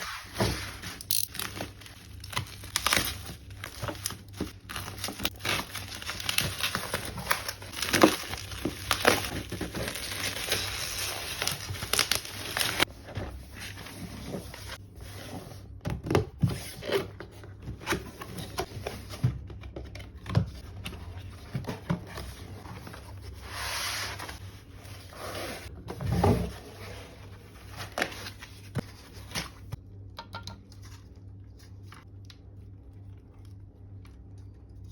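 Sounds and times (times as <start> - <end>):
packaging crinkling and tearing: 0.6 - 12.9.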